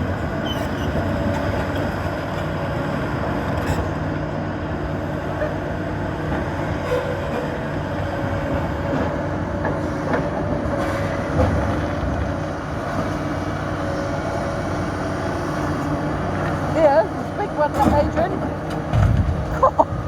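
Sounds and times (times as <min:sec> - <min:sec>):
diesel excavator engines whining: 0:00.0 - 0:20.0
machines knocking and clanking on rocks: 0:17.6 - 0:20.0.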